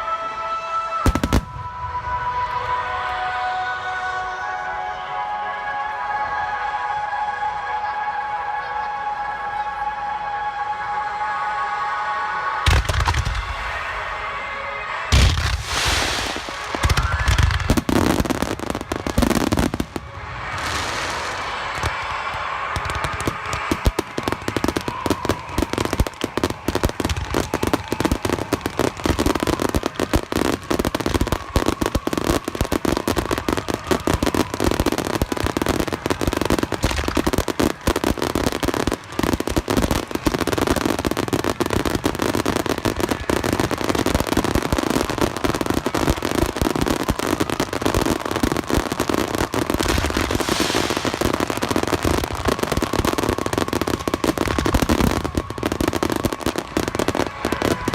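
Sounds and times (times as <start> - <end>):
fireworks crackling bursts: 12.4 - 57.9.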